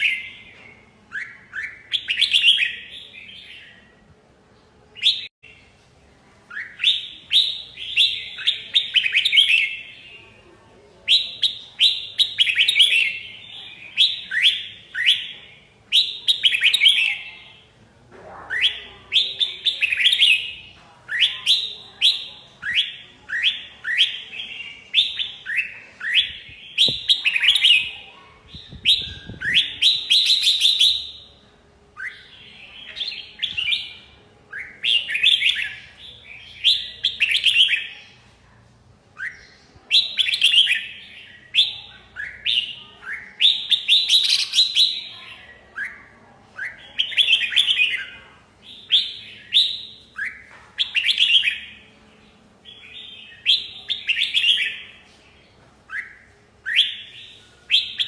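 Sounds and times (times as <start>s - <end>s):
bird chirping: 6.5s - 17.8s, 18.4s - 38.4s.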